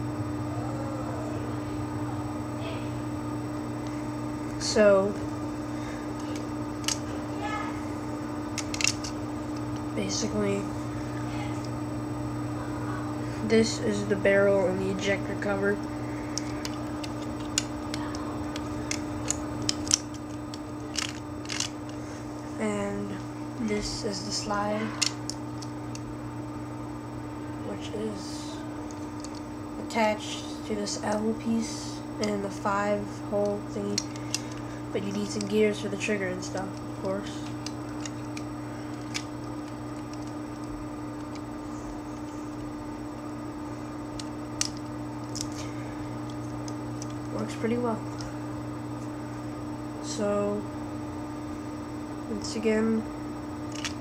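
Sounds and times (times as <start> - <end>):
steady low hum: 0.0 - 54.0
sharp clicks and taps of parts: 8.6 - 9.9, 16.4 - 22.0, 37.4 - 40.4, 44.2 - 45.6, 53.7 - 54.0.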